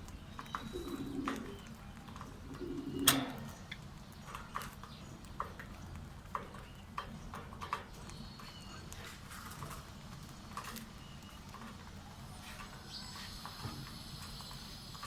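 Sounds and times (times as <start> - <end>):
parrots clicking and tapping: 0.0 - 15.0
faint high chirps: 12.0 - 15.0.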